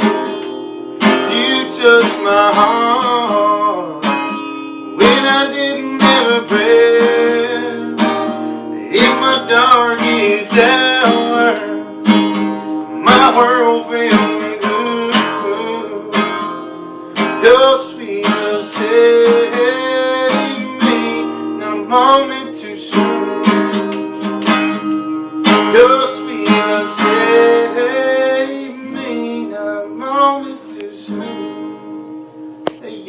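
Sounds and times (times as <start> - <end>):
acoustic guitar strumming: 0.0 - 33.0
person singing long notes: 5.0 - 11.9.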